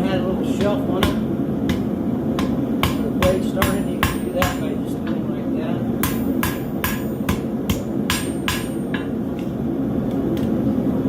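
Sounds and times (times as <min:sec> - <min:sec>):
steady low hum: 0:00.0 - 0:11.0
hammer striking steel on anvil: 0:00.5 - 0:05.2, 0:06.0 - 0:09.5.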